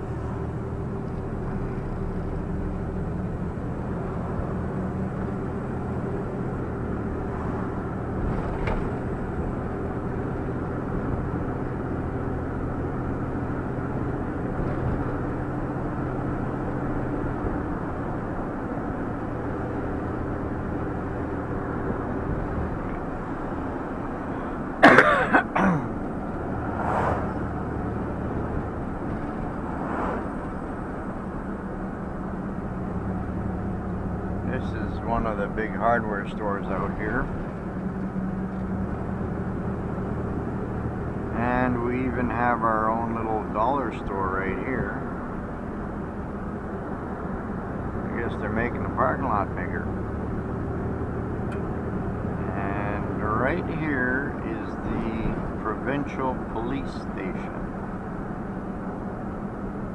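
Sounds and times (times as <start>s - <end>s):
road noise: 0.0s - 59.9s
vehicle engine running: 0.0s - 59.9s
loud cough: 24.8s - 26.0s.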